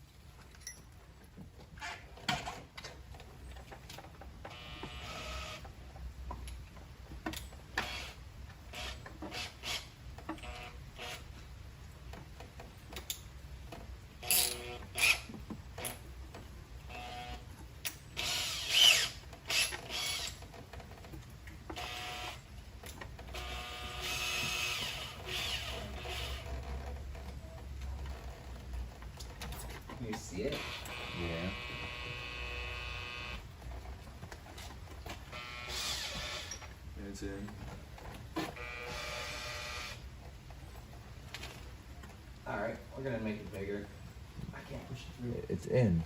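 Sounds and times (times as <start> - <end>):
knocks clicks and scraping: 0.4 - 32.2.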